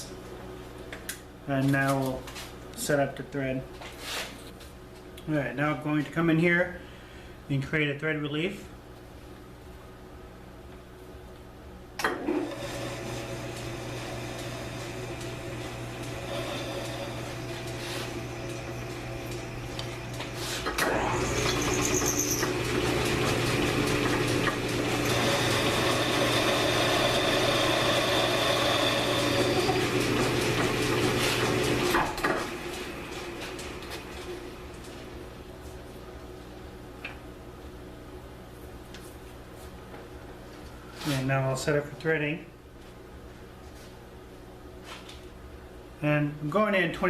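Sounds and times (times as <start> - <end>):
lathe motor hum: 12.2 - 35.4
lathe tool rasping into steel: 24.9 - 31.8.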